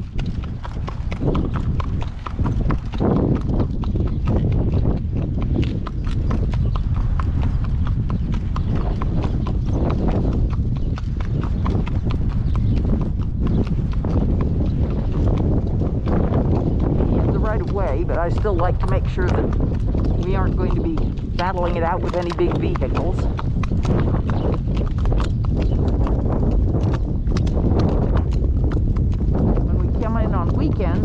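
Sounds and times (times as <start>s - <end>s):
horse hooves on pavement: 0.0s - 31.0s
wind rumble on microphone: 0.0s - 31.0s.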